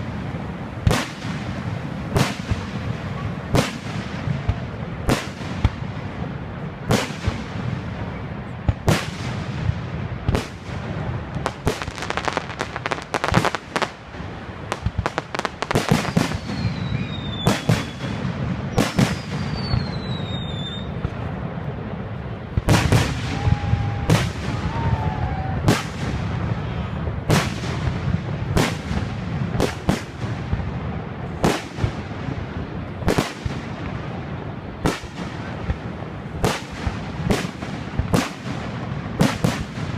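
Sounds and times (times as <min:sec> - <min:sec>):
firework crackling: 0:00.0 - 0:39.9
whistling shells: 0:16.0 - 0:18.1, 0:18.8 - 0:20.9
firework shells booming: 0:22.5 - 0:24.9.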